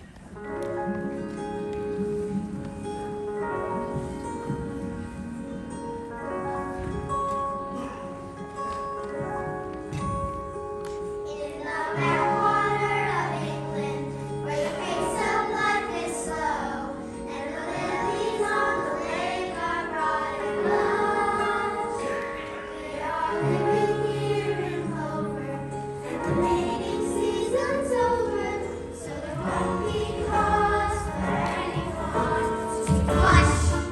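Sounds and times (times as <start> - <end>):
instrumental accompaniment: 0.0 - 33.9
children singing: 11.3 - 33.9.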